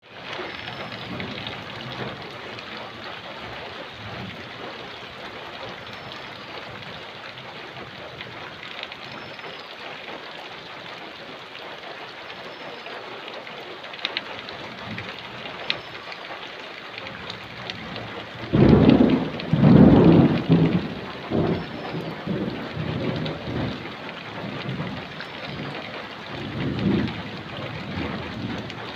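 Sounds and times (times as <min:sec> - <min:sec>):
heavy rain falling: 0:00.0 - 0:28.9
thunder clap and rumbles: 0:00.2 - 0:09.4, 0:17.1 - 0:28.9.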